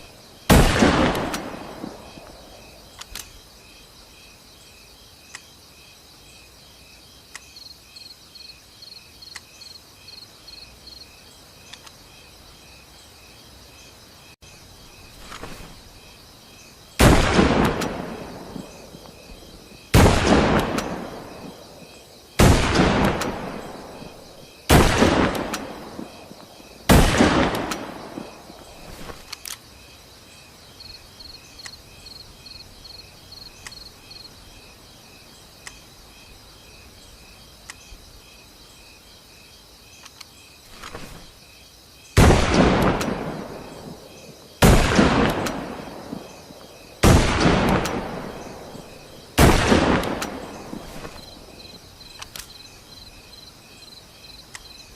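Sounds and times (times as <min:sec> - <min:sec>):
rifle shots with echo: 0:00.5 - 0:02.4, 0:17.0 - 0:19.0, 0:19.9 - 0:28.6, 0:42.2 - 0:51.2.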